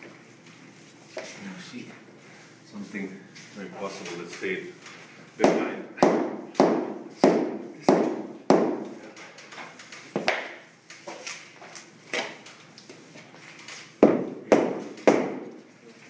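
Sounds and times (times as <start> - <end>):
hammer striking wood floor: 5.4 - 9.0, 10.2 - 10.6, 14.0 - 15.6.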